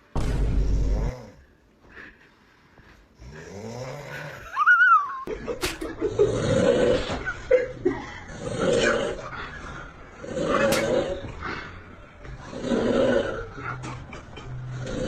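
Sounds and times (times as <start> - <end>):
person snoring: 0.6 - 1.5, 3.2 - 4.6, 6.0 - 7.3, 7.9 - 15.0.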